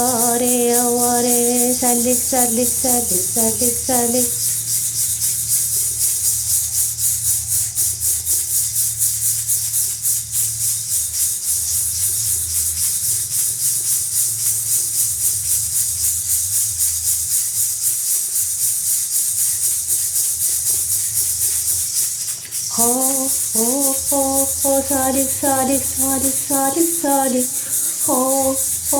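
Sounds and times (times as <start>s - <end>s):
low steady hum: 0.0s - 4.5s, 22.7s - 28.9s
maraca shaken in rhythm: 0.0s - 28.9s.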